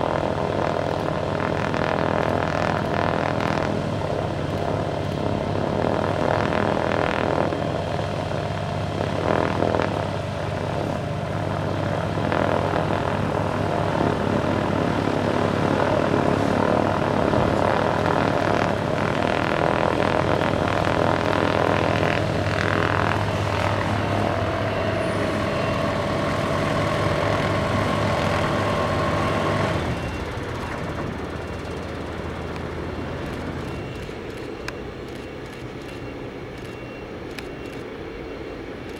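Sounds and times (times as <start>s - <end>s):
propeller aircraft engines droning: 0.0s - 38.9s.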